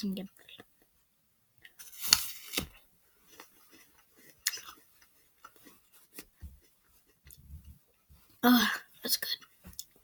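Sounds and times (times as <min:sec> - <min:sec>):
apple crunching and chewing: 0:01.6 - 0:07.5.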